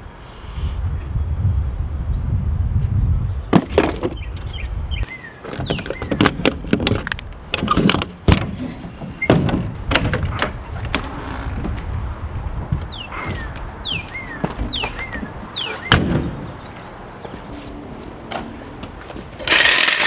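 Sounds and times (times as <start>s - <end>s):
metallic knocks and clanks: 3.5s - 17.5s
low rumble: 9.7s - 14.0s.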